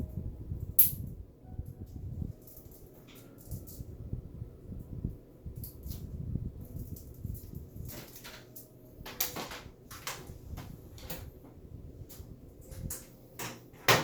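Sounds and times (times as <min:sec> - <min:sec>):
computer case parts clicking: 0:07.8 - 0:11.3, 0:12.6 - 0:14.0.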